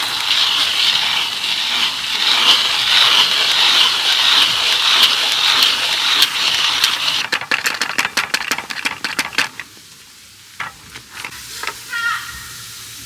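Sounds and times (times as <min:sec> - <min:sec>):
meat sizzling on a griddle: 0:00.0 - 0:07.2, 0:11.2 - 0:13.0.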